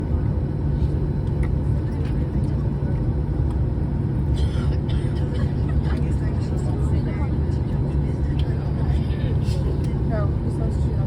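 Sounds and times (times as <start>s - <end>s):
jet engines rumbling: 0.0s - 11.0s.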